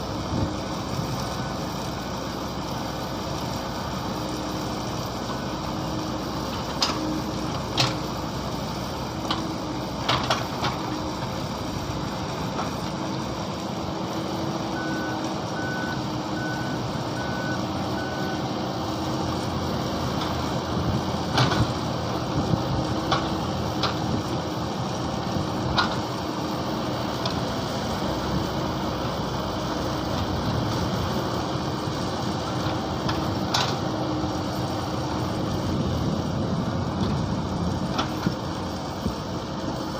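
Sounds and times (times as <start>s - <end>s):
excavator engine running: 0.0s - 39.9s
short beeps: 14.8s - 18.4s.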